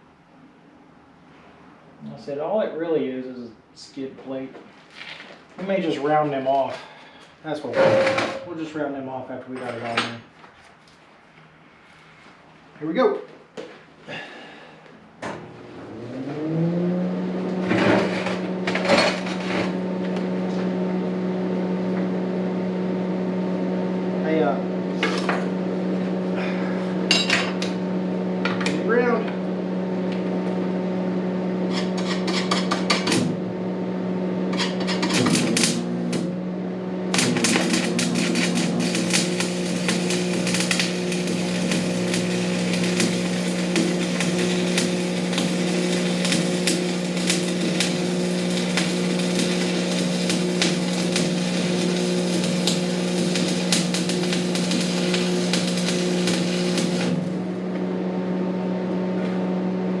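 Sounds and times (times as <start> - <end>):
low hum: 7.7 - 8.7
welding arc crackling: 31.6 - 33.6, 34.4 - 36.4, 37.0 - 57.6.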